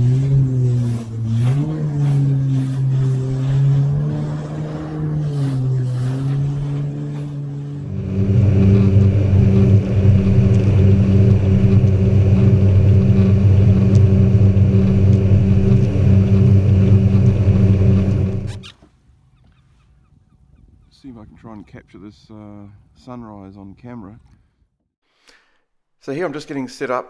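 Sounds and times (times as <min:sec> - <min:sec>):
motor engine running: 0:00.0 - 0:18.6.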